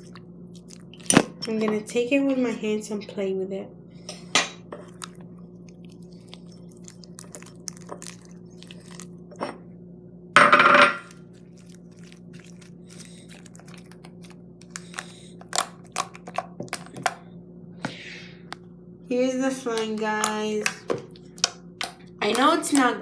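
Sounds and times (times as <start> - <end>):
slime squelch: 0.0 - 2.0, 4.7 - 9.4, 11.0 - 17.3, 19.7 - 23.0
sticky clicks and crackles: 11.1 - 17.2.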